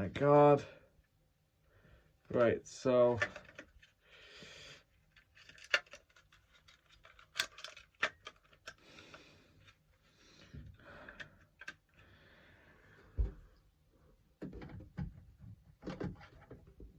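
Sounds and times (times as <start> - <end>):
plastic casing clicking: 5.4 - 8.8.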